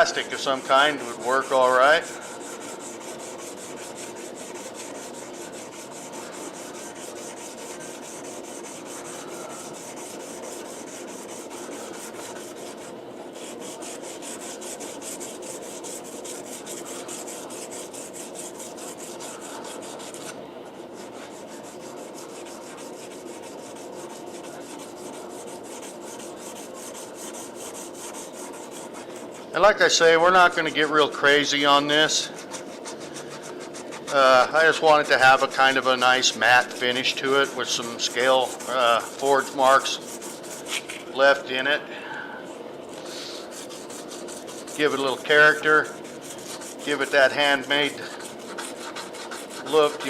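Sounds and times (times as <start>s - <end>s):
sandpaper rasping on steel blade: 0.0s - 29.5s, 31.1s - 41.1s, 43.0s - 50.0s.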